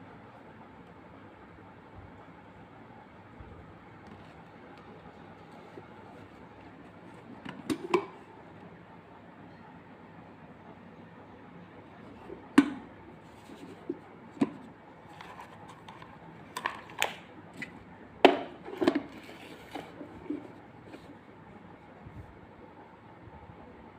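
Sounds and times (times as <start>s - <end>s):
kettle parts clicking and knocking: 7.4s - 8.2s, 13.9s - 17.2s, 18.2s - 19.8s.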